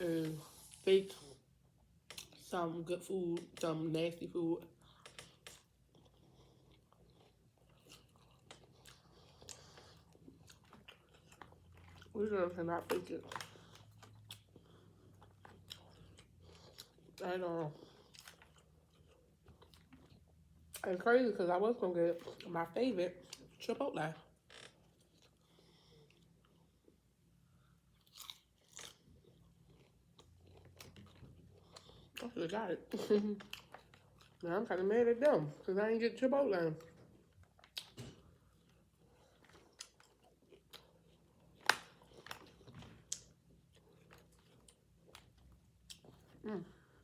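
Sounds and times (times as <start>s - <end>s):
close-up chewing: 4.6s - 20.9s, 22.1s - 35.7s, 36.6s - 47.0s
food crunching: 4.8s - 12.2s, 27.9s - 32.4s, 36.8s - 46.4s.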